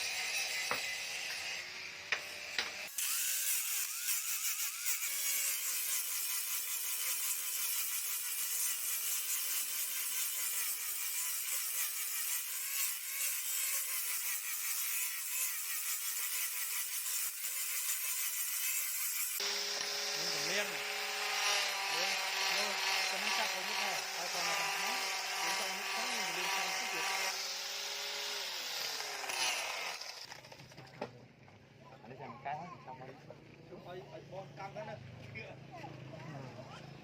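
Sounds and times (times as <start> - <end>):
hand tool rasping: 2.6 - 30.3.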